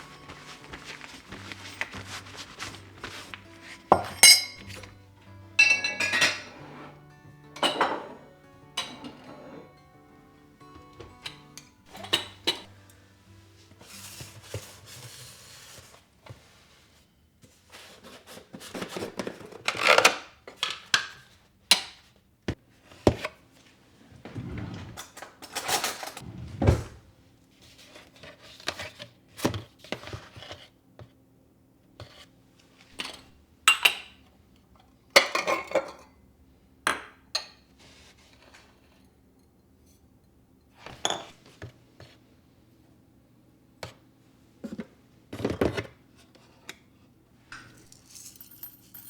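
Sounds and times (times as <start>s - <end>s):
dishes clinking and knocking: 3.9s - 4.9s, 5.6s - 9.8s, 10.9s - 12.7s.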